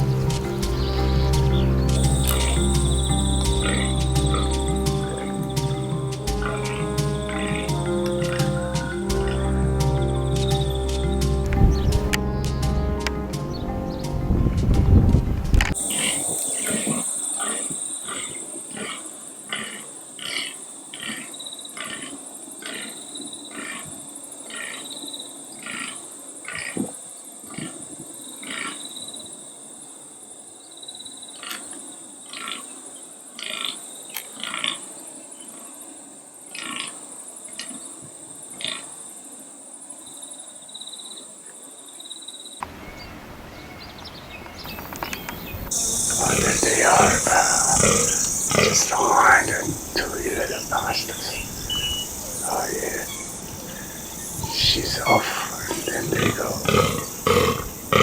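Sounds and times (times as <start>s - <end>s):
deer groaning: 0.0s - 13.7s, 45.7s - 58.0s
steady high-pitched whine: 45.6s - 57.9s.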